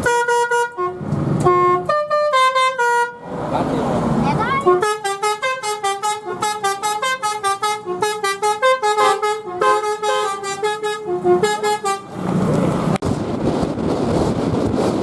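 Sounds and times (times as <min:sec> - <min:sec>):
multi-tone bus horn tune: 0:00.0 - 0:03.4, 0:04.5 - 0:12.4
wind noise: 0:12.0 - 0:15.0.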